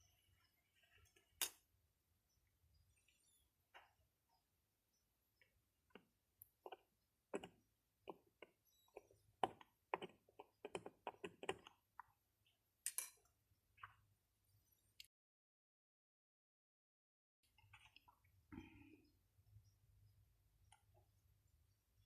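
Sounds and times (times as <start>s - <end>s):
small hard objects clicking and tapping: 5.9s - 12.2s.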